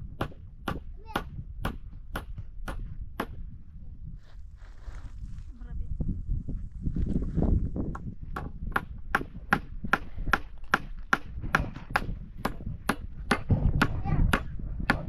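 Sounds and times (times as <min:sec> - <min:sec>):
tool striking wood: 0:07.9 - 0:15.0.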